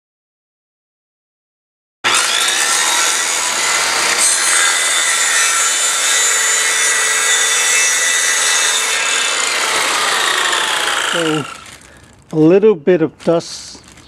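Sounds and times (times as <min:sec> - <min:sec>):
circular saw cutting wood: 0:02.0 - 0:12.1
small vacuum running: 0:08.5 - 0:12.1.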